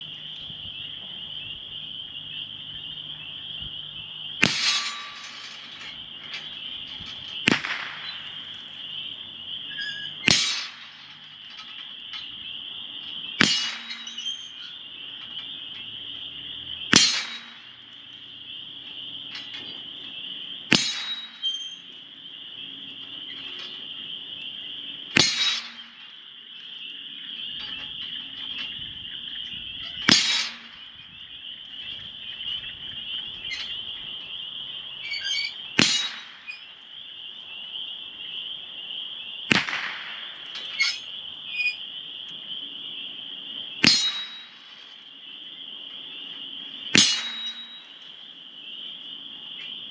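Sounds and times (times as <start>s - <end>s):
rifle shots at steel target: 4.4s - 6.8s, 7.4s - 9.1s, 10.2s - 11.8s, 13.3s - 14.7s, 16.8s - 18.0s, 20.7s - 21.9s, 25.1s - 26.8s, 30.1s - 31.0s, 35.8s - 36.7s, 39.5s - 41.2s, 43.8s - 45.0s, 46.9s - 48.2s.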